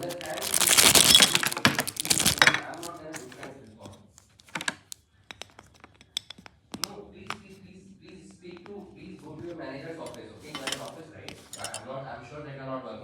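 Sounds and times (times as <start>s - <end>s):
packaging crinkling: 0.0s - 3.4s
light clicks and taps: 4.2s - 7.4s.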